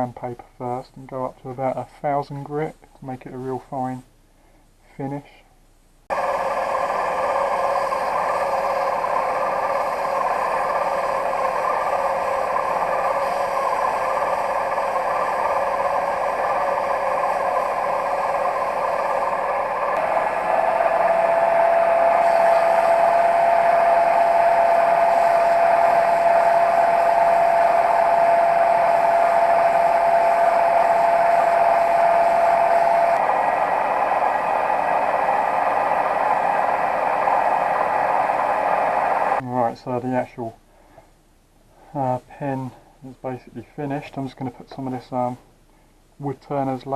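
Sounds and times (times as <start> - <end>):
steady whine: 6.0 - 41.2, 41.9 - 45.5
lathe running: 6.1 - 39.4.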